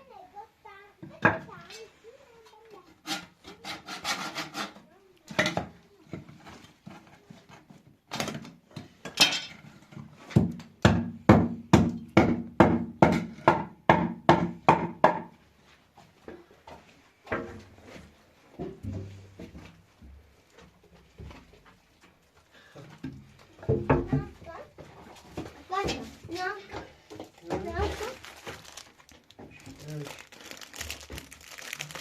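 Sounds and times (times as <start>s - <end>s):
scraping strokes on wood: 2.9s - 4.9s.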